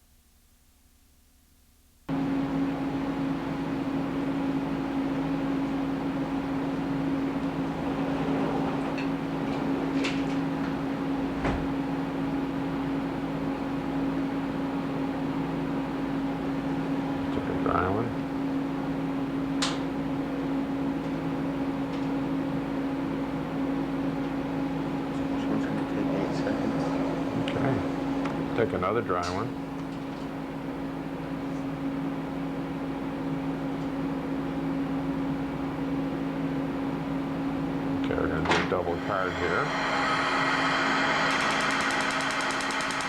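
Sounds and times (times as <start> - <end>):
surgical equipment humming with hiss: 25.1 - 30.2, 38.0 - 43.0.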